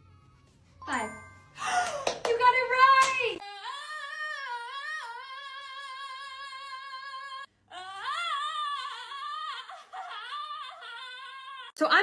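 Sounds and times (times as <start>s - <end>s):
high voice singing without words: 3.4s - 11.7s.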